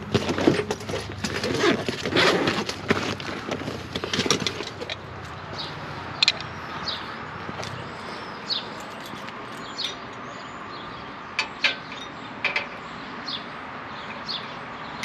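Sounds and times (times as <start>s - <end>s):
tools and copper pipe clanking: 0.0s - 5.1s, 8.8s - 10.2s, 11.4s - 12.9s
bird chirps: 5.3s - 15.0s.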